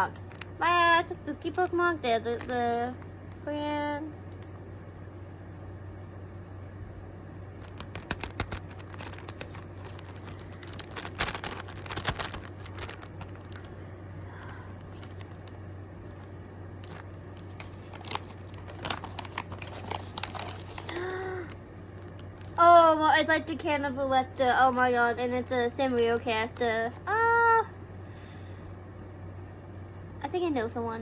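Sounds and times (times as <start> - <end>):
plastic packaging crinkling: 0.0 - 0.6, 1.4 - 3.5, 7.6 - 22.8, 25.7 - 27.2
low hum: 0.0 - 30.2.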